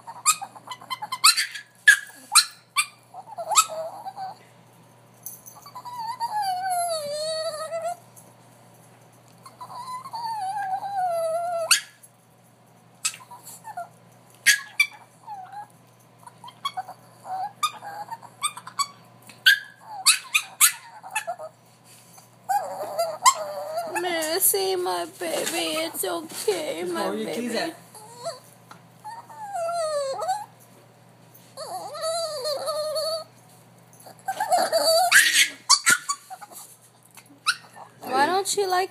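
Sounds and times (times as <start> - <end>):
dog yipping: 0.0 - 4.4, 5.6 - 8.0, 9.4 - 12.0, 13.0 - 21.5, 22.5 - 24.2, 28.0 - 30.5, 31.6 - 33.3, 34.0 - 36.7, 37.4 - 38.1
dog howling: 3.2 - 4.4, 5.7 - 8.0, 9.6 - 11.9, 16.4 - 18.9, 22.5 - 24.2, 29.0 - 30.5, 31.6 - 33.3, 34.2 - 35.6.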